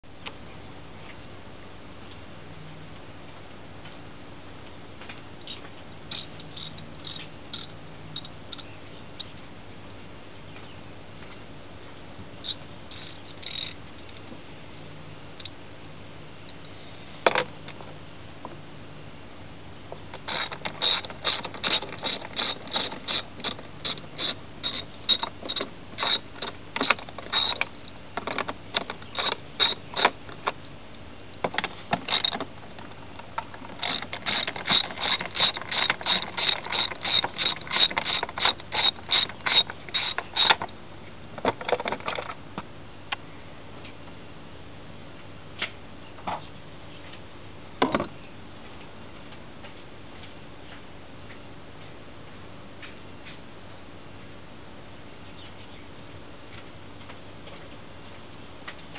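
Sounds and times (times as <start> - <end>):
ratchet wrench clicking: 6.1 - 8.7, 12.4 - 14.2, 20.2 - 30.6, 32.0 - 32.4, 33.4 - 40.6.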